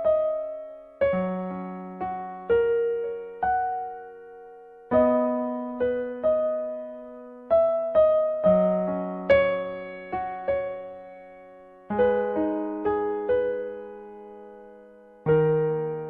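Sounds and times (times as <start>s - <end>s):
slow gentle keyboard melody: 0.0s - 16.0s.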